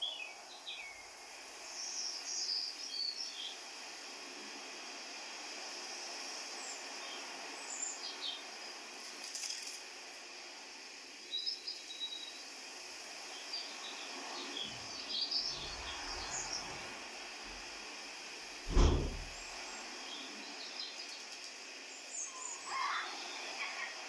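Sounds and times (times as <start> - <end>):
loud thump: 15.6 - 16.5, 18.7 - 19.4
low rumble: 15.6 - 16.7, 18.7 - 19.4.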